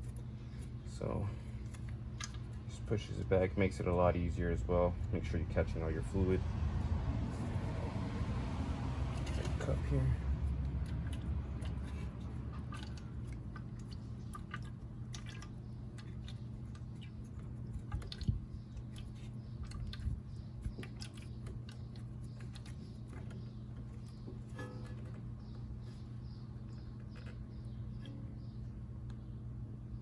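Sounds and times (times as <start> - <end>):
steady low hum: 0.0 - 30.0
wet squishes of fluid: 1.4 - 2.8, 6.7 - 29.2.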